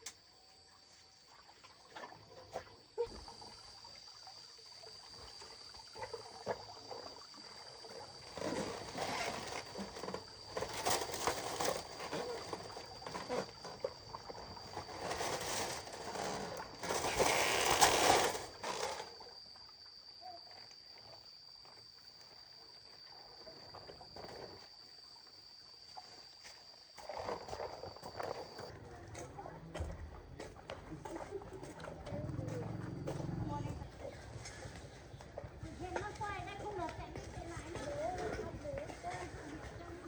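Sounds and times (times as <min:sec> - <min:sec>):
water splashing and sloshing: 0:00.8 - 0:21.3, 0:22.8 - 0:40.0
high insect buzz: 0:05.2 - 0:28.7.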